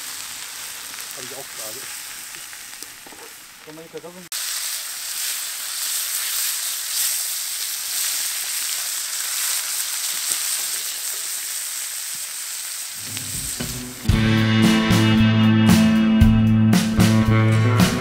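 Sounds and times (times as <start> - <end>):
onions sizzling in a pan: 0.0 - 14.2
loud music: 13.1 - 18.0.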